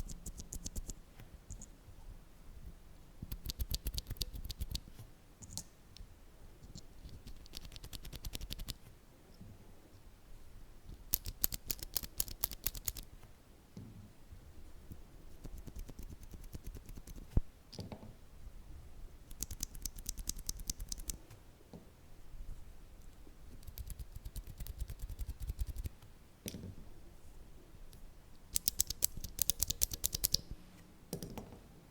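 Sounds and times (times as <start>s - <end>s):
sharp loud keyboard clicks: 3.3s - 4.8s, 7.1s - 8.8s, 11.1s - 13.0s, 19.3s - 21.2s, 28.5s - 30.5s.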